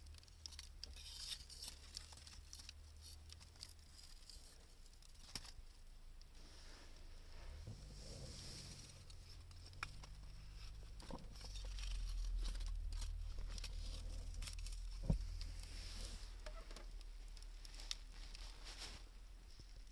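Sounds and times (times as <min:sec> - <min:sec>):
steady low rumble: 0:06.4 - 0:19.9
wood fire crackling and popping: 0:09.1 - 0:19.9.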